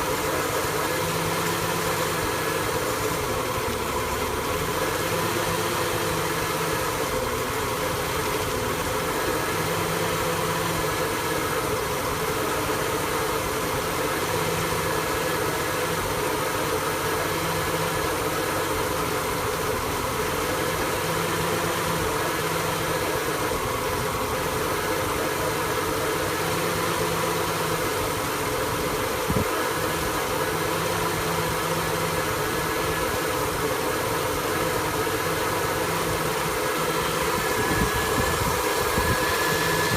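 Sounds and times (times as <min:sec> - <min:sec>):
engine idling roughly: 0:00.0 - 0:39.9.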